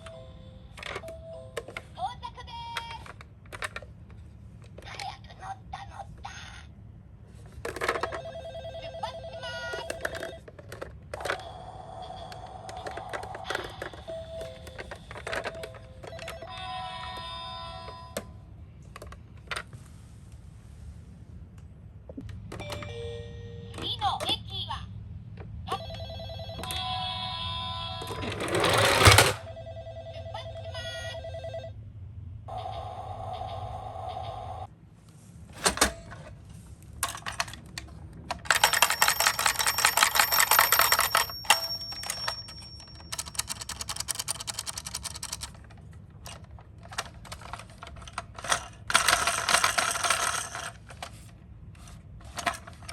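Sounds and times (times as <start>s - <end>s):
plastic toy cars clattering: 2.7s - 5.1s, 7.3s - 8.4s, 9.7s - 18.3s, 28.0s - 29.4s, 35.5s - 52.9s
toy electronic sirens: 11.2s - 18.2s, 32.5s - 34.7s
toy siren trilling buzzy tones: 32.5s - 34.6s.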